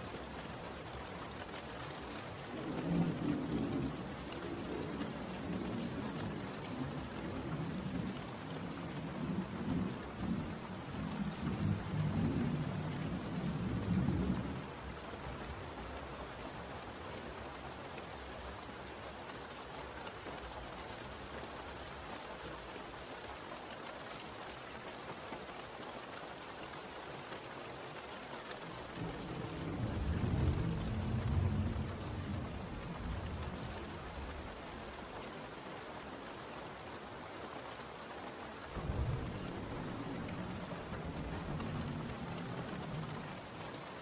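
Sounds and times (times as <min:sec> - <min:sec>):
steady rain falling: 0:00.0 - 0:44.0
thunder rumbling: 0:29.0 - 0:34.6, 0:38.7 - 0:43.6.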